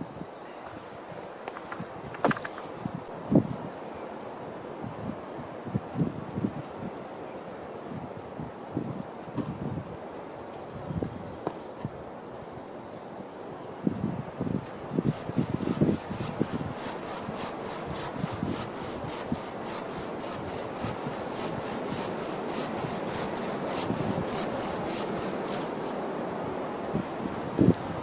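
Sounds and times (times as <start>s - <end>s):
hand saw cutting wood: 15.0s - 26.0s.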